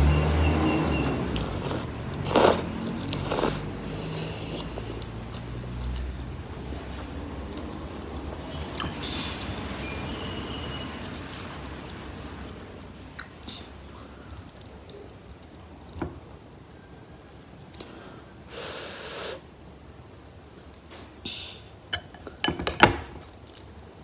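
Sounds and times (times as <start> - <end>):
wet noodle squishes: 1.3 - 3.8.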